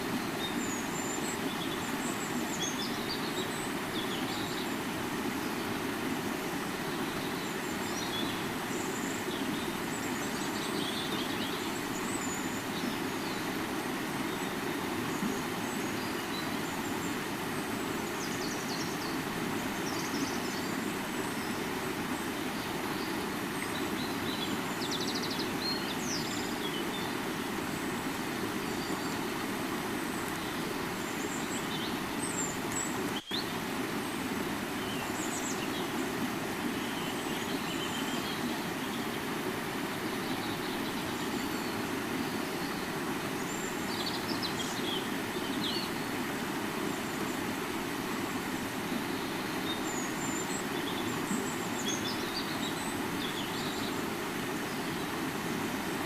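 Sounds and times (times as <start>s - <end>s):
river rushing: 0.0s - 56.0s
birds chirping: 6.8s - 47.4s.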